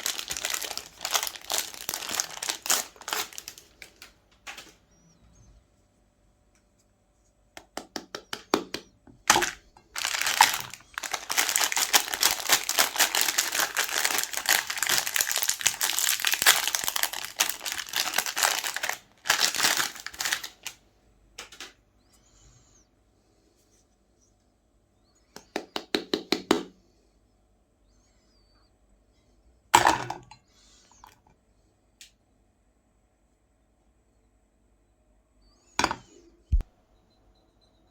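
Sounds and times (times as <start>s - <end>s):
ice cream bars crunching in grinder: 0.0s - 4.0s, 9.3s - 20.8s.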